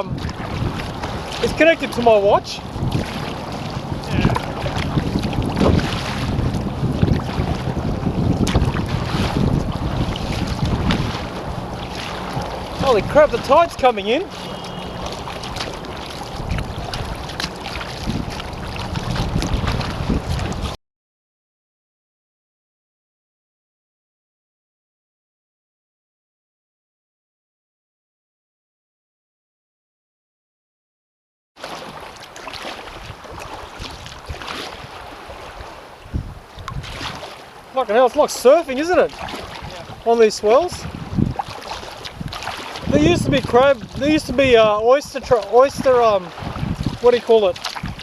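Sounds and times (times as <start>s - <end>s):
paddle splashes: 0.0s - 20.8s, 31.6s - 48.0s
water splashing against kayak: 0.0s - 20.8s, 31.6s - 48.0s
wind buffeting microphone: 0.0s - 20.8s, 32.8s - 48.0s
low thumps: 2.7s - 13.6s.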